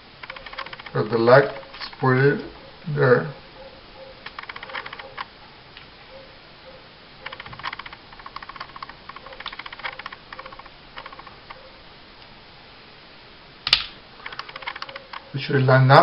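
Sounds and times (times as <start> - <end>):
rapid light clicking: 0.2 - 2.0, 4.0 - 5.9, 7.2 - 12.3, 13.6 - 15.4.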